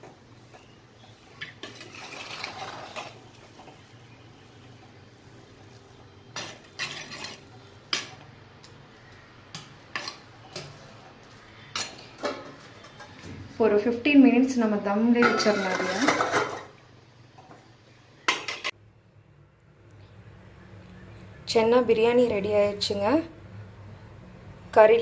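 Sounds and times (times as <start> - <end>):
spoon scraping and knocking pot: 15.2 - 16.7.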